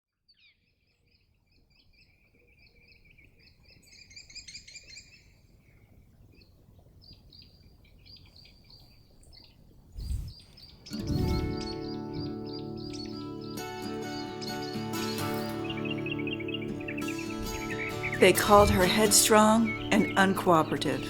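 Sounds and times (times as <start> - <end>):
small birds chirping: 0.3 - 21.0.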